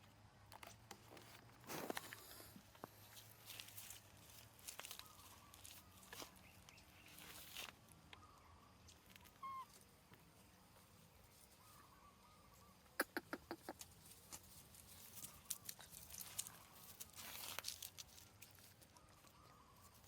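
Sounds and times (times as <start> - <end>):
small animal squeaks: 9.2 - 9.8.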